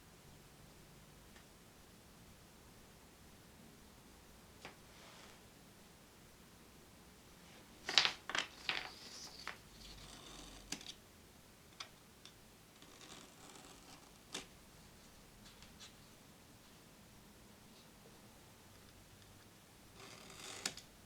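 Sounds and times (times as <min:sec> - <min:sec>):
soft rustles: 0:04.8 - 0:05.4, 0:07.3 - 0:10.2.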